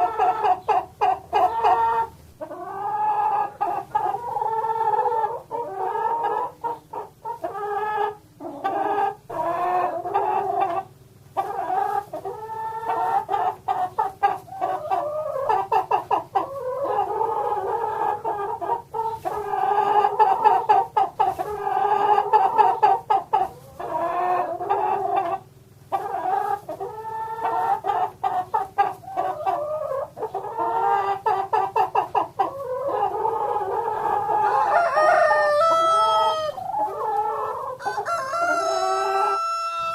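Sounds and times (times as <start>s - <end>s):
chickens clucking: 0.0s - 39.9s.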